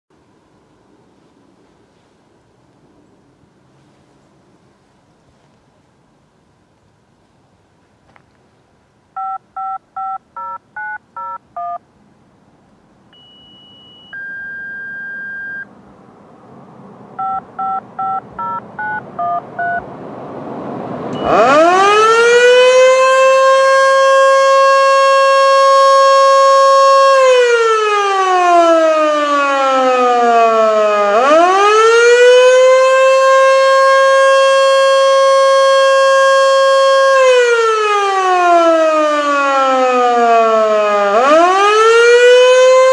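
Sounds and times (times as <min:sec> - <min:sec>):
pager touch-tone beeps: 0:09.2 - 0:11.8, 0:13.2 - 0:15.6, 0:17.2 - 0:19.8
mechanical siren wailing: 0:21.1 - 0:42.9.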